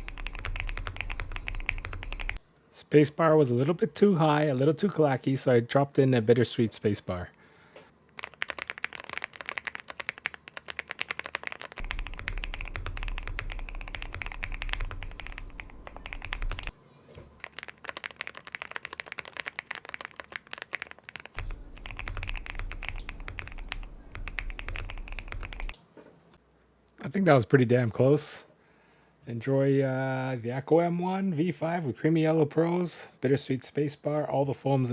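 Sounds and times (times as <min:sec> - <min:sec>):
fast typing on mechanical keyboard: 0:00.0 - 0:02.4, 0:08.2 - 0:16.7, 0:17.4 - 0:25.8
low hum: 0:11.8 - 0:16.7.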